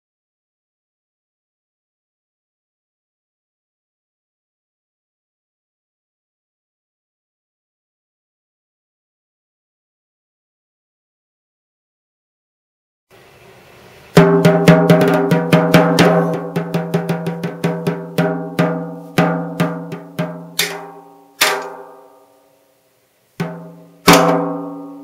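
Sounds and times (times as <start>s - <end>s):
snare drum hits ringing: 14.2s - 22.2s, 23.4s - 25.0s.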